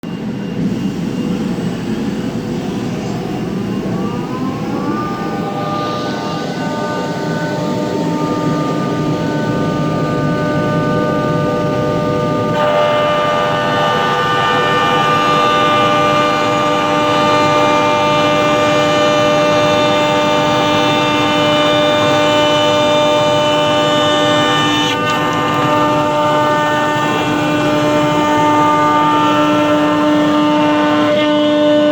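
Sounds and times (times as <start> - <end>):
cutting machine running: 0.0 - 31.9
machine whine rising in pitch: 0.0 - 31.9.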